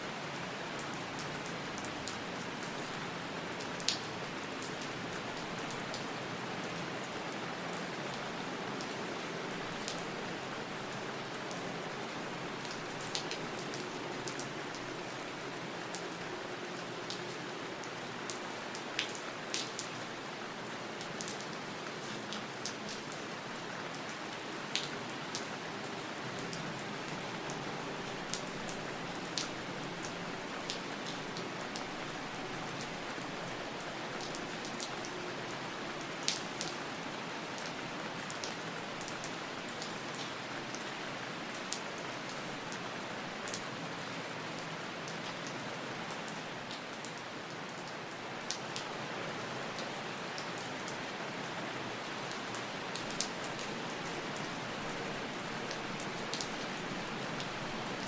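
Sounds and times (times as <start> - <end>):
steady rain hiss: 0.0 - 58.0
raindrops ticking close by: 0.4 - 6.4.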